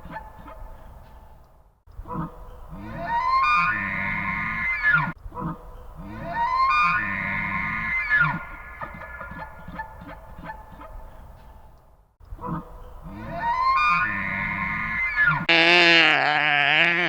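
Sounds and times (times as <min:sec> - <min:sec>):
animal long rising call: 0:06.0 - 0:09.7.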